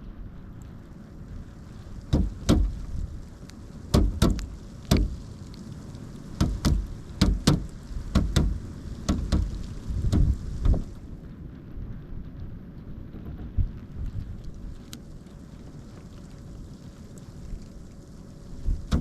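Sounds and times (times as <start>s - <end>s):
low wind rumble: 0.0s - 19.0s
woodpecker pecking: 6.4s - 10.3s.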